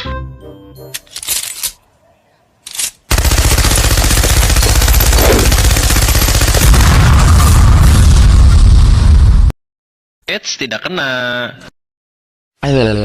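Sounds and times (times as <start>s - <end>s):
machine-gun fire: 3.1s - 8.3s.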